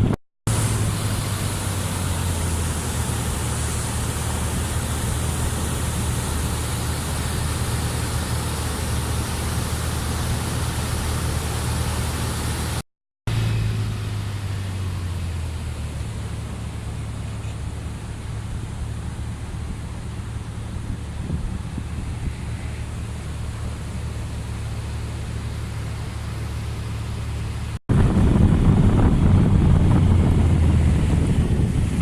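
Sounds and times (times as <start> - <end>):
vehicle engine idling: 0.0 - 32.0
steady hiss: 0.5 - 12.8.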